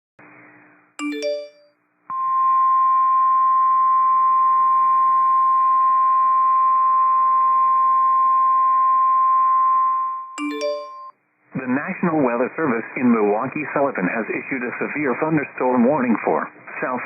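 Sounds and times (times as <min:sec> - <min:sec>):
short electronic chime: 0:01.0 - 0:01.7, 0:10.4 - 0:11.1
steady high alarm tone: 0:01.0 - 0:05.2, 0:05.8 - 0:11.1.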